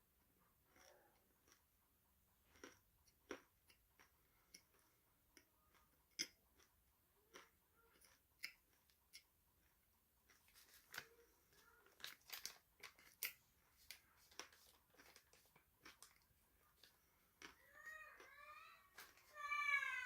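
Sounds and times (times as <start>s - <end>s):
person chewing crunchy food: 0.7s - 1.7s, 2.4s - 4.8s, 5.4s - 9.2s, 11.9s - 18.5s.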